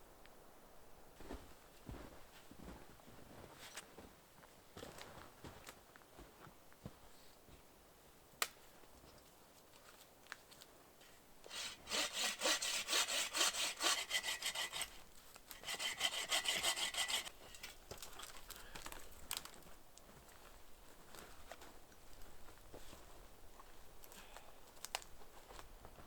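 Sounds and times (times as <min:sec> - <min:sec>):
hand saw cutting wood: 0:11.5 - 0:17.8.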